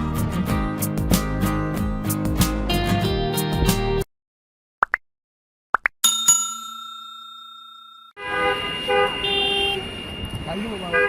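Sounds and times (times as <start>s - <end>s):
bell ring: 6.0s - 8.2s
busy street noise: 8.2s - 11.0s
vehicle horns: 8.2s - 11.0s.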